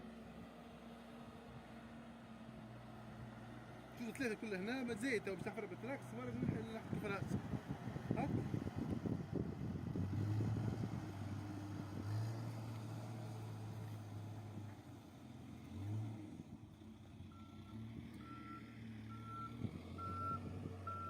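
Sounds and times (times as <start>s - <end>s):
reversing alarm beeping: 17.4s - 21.0s.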